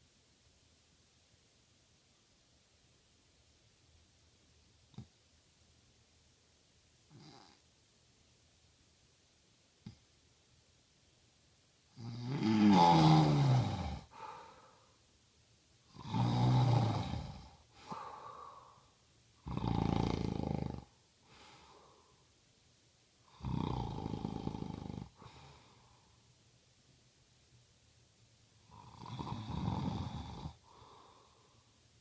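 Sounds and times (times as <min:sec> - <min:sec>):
soft breaths: 0:11.8 - 0:26.8, 0:28.5 - 0:32.0
man snoring: 0:12.0 - 0:14.5, 0:15.9 - 0:18.6, 0:19.4 - 0:20.9, 0:23.3 - 0:25.5, 0:28.7 - 0:31.2.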